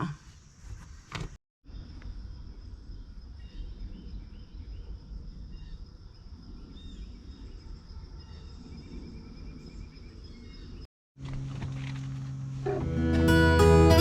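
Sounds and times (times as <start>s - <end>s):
birds chirping: 2.9s - 10.9s.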